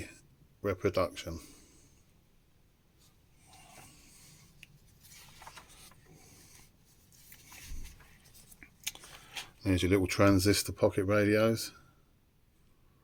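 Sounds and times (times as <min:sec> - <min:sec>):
magazine pages rustling: 0:03.0 - 0:09.8.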